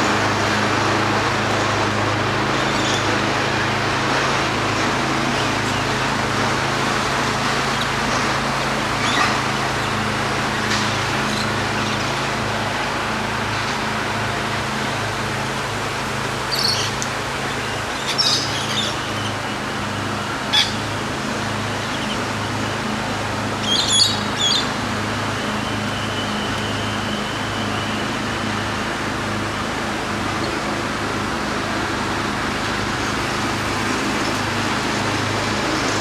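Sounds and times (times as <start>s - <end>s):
high bird chirps: 16.5s - 19.5s, 20.4s - 21.0s, 23.6s - 24.8s.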